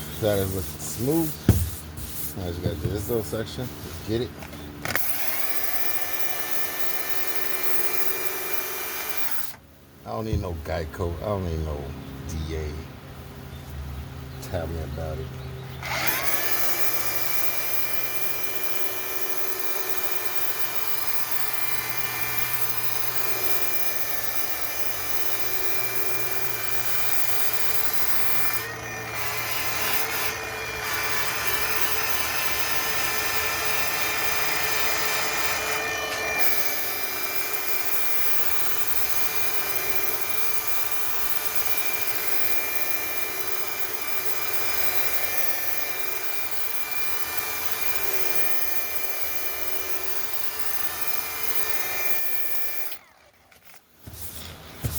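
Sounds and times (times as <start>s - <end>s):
rotary polisher sanding filler: 0.0s - 4.3s.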